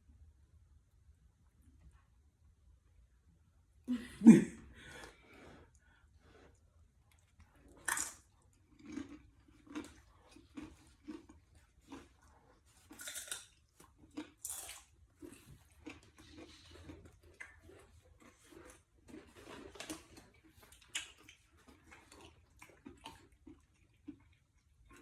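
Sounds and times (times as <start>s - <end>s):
person crunching chips: 7.7s - 12.2s, 12.8s - 17.0s.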